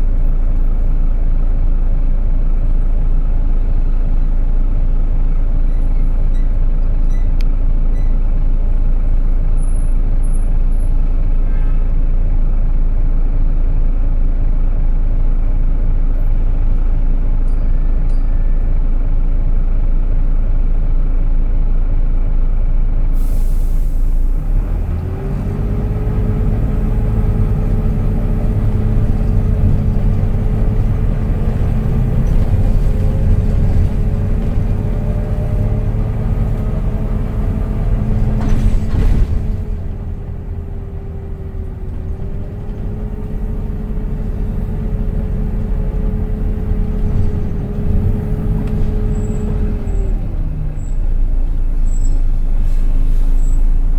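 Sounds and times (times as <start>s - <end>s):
bus engine rumble: 0.0s - 53.9s
short hiss burst: 23.2s - 24.1s
high-pitched bus whine: 23.2s - 53.9s.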